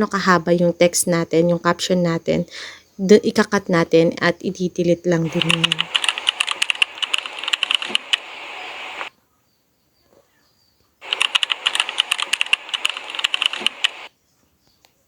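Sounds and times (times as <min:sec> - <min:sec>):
keyboard key clicks: 0:11.1 - 0:13.8.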